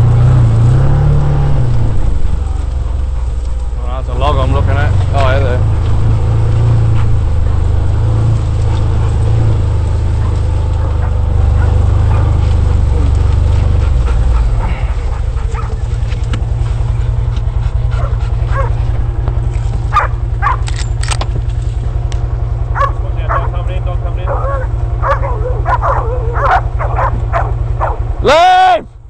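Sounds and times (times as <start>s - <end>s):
low rumble pulsing: 0.0s - 29.0s
dogs barking and yipping: 5.2s - 21.1s, 22.3s - 28.2s.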